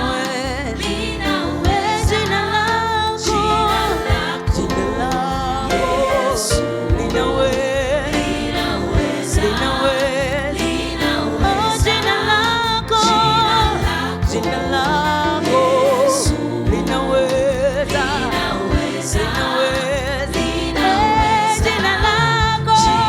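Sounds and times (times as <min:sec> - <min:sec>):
gospel group singing: 0:00.0 - 0:23.0
instrumental backing with beat: 0:00.0 - 0:23.0.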